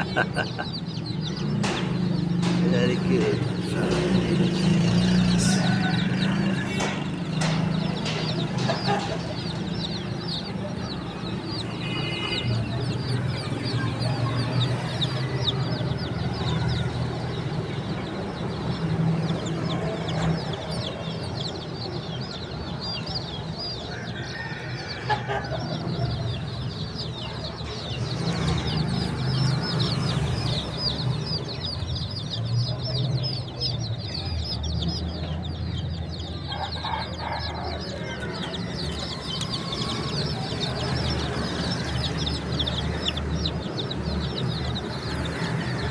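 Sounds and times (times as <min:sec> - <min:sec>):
baby chicks peeping: 0:00.0 - 0:45.9.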